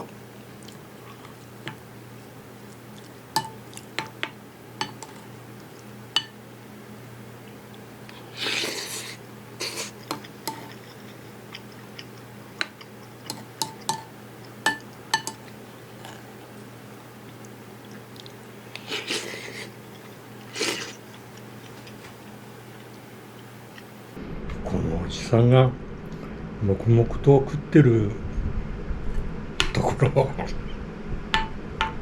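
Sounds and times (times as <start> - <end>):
steady low hum: 0.0 - 32.0
utensils clinking on ceramic dish: 3.4 - 5.2, 13.3 - 14.1, 14.7 - 15.4.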